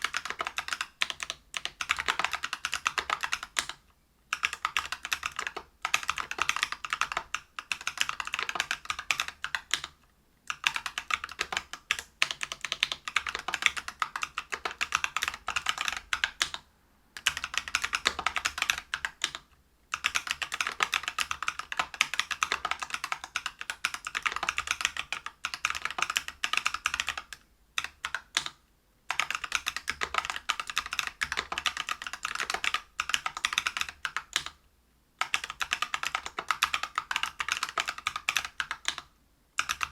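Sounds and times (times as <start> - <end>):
mechanical keyboard typing: 0.0 - 16.6, 17.2 - 34.6, 35.2 - 39.9.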